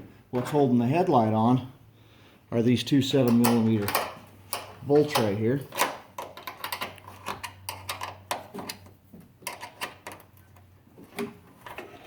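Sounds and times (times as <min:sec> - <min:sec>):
wrench clicking on bolts: 0:03.3 - 0:08.9.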